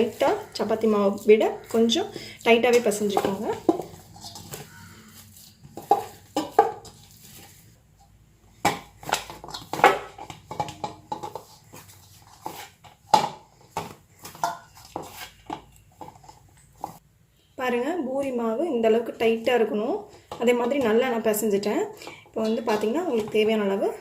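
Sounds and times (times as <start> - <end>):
dough slapping against bowl: 0.0 - 7.4, 8.6 - 15.4.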